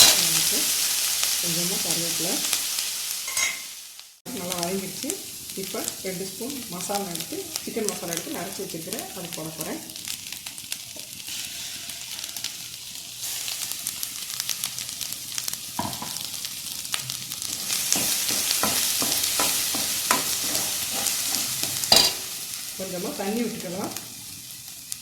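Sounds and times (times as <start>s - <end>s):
onions sizzling in oil: 0.0s - 25.0s
spoon stirring and scraping pan: 6.8s - 14.0s, 17.4s - 23.3s.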